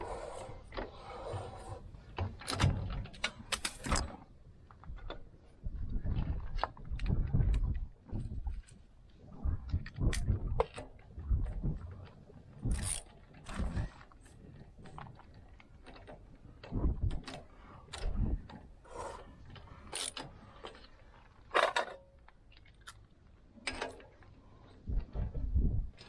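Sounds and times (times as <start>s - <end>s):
tools and metal parts clinking: 2.4s - 4.1s, 12.6s - 14.4s, 19.8s - 20.9s, 21.5s - 23.1s.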